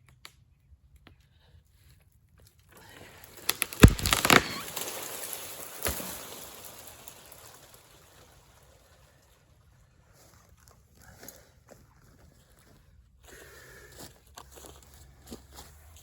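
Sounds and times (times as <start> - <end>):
tree cracking and snapping: 2.9 - 8.6
branches tearing through brush: 3.0 - 8.3
leaves rustling: 3.1 - 9.5
tree hitting ground thud: 3.5 - 7.2.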